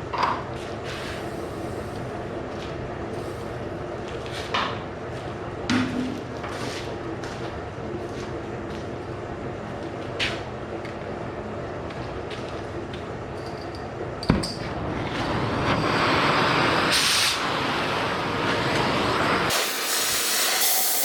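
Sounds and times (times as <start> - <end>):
steady machine hum: 0.0 - 20.3
loud rushing hiss of metal cutting: 15.3 - 21.0.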